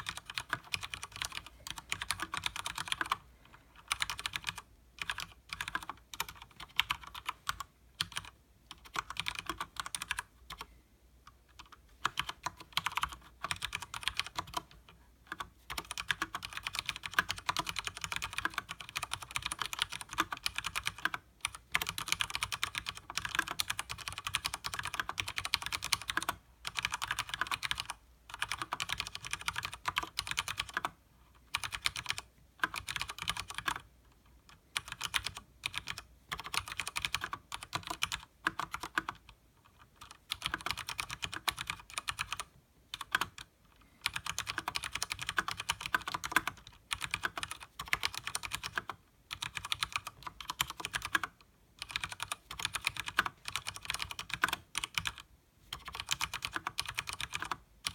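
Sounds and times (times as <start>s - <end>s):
mechanical keyboard key clacks: 55.8s - 57.9s.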